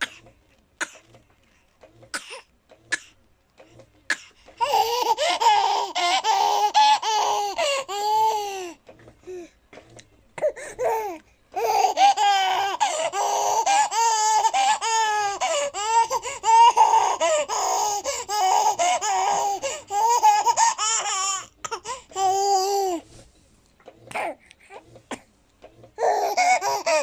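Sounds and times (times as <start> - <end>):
baby laughing: 4.6 - 8.8, 10.8 - 23.0, 26.0 - 27.0.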